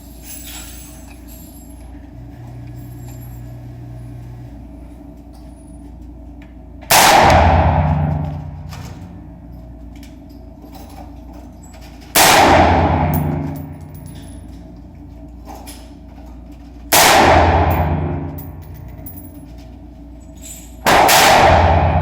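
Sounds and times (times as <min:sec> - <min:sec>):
suppressed rifle shots: 0:20.9 - 0:22.0.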